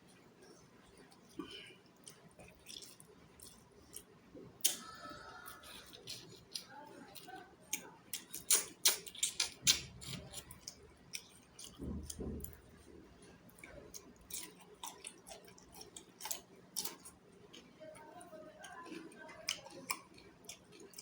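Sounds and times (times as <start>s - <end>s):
wet chewing mouth clicks: 1.4s - 12.6s.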